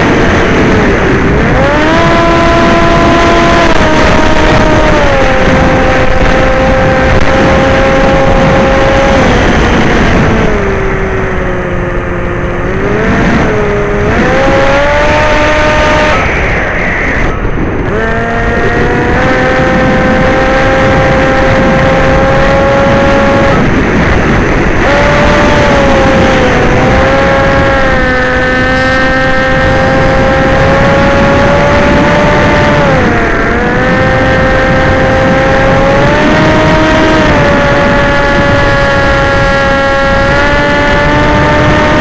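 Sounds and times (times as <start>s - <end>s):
drone propellers whining: 0.0s - 42.0s
wind rush: 0.0s - 42.0s.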